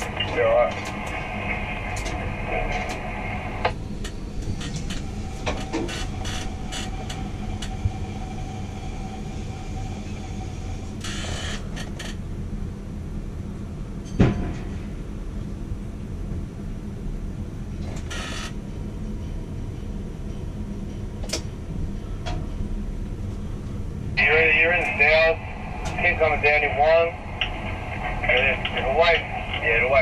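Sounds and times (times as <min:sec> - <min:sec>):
crane machinery humming: 0:00.0 - 0:13.9, 0:16.9 - 0:30.0
scattered clicks: 0:27.4 - 0:29.7.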